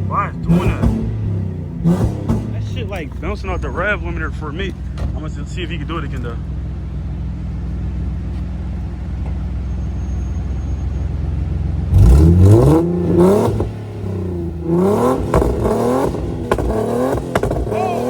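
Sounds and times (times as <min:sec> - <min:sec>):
exhaust pops: 0:00.0 - 0:06.4, 0:11.9 - 0:18.0
car engine idling and revving: 0:00.0 - 0:18.0.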